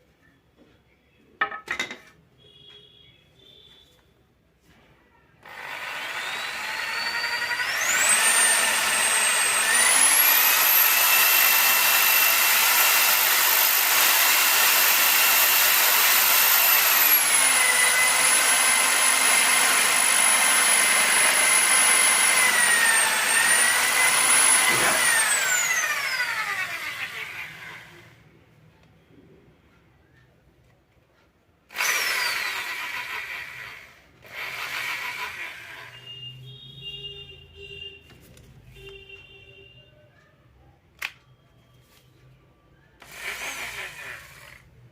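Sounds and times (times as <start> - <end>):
electric drill motor whining: 5.4 - 28.2, 31.7 - 36.1, 43.0 - 44.7.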